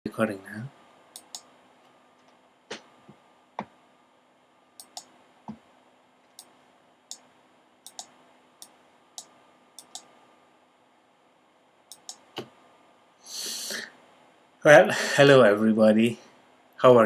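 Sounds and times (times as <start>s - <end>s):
faint room hiss: 0.1s - 17.0s
computer mouse and key clicks: 1.2s - 1.5s, 4.8s - 5.1s, 7.8s - 10.1s, 11.9s - 12.5s.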